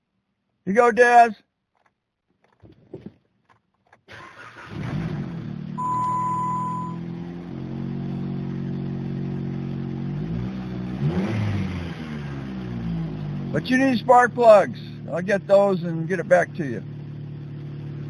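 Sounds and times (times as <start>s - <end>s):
car engine starting and idling: 3.4s - 11.6s
electronic warning chime: 5.8s - 7.1s.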